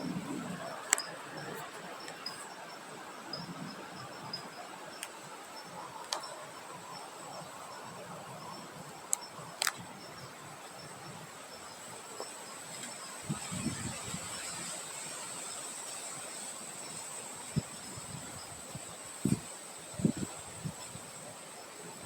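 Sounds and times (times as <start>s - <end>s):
insect trill: 0.0s - 22.0s
wind hiss: 0.0s - 22.0s
sharp clicks: 9.1s - 9.8s.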